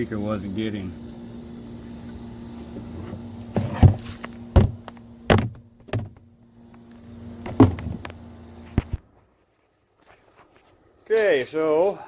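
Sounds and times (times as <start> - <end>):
steady low hum: 0.0 - 11.1
sharp knocks and thumps: 3.0 - 6.3, 7.4 - 8.1.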